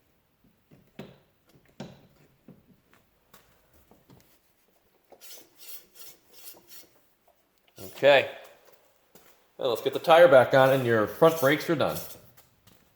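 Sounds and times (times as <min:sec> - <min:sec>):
short scraping rub: 0:05.2 - 0:07.0, 0:07.8 - 0:08.3, 0:10.0 - 0:12.5.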